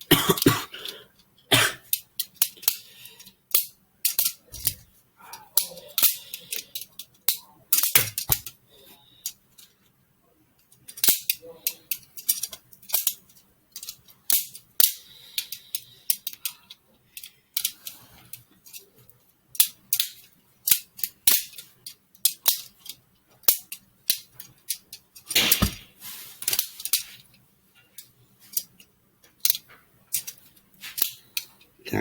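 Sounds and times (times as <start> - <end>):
plastic knife parts clacking: 3.5 - 4.8, 5.6 - 8.6, 10.7 - 18.9, 19.6 - 25.8, 28.0 - 31.6.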